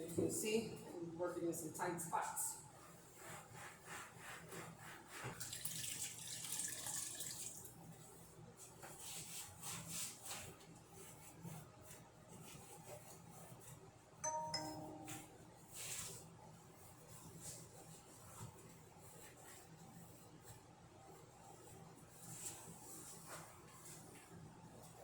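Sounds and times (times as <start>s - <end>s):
cloth wiping: 2.7s - 5.6s, 21.6s - 24.4s
electronic chime: 14.2s - 15.4s.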